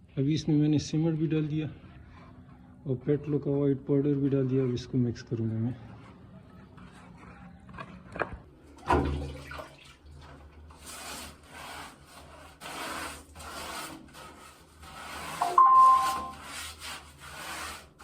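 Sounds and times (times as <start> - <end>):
cement slurry stirred in a bucket: 3.9 - 18.0.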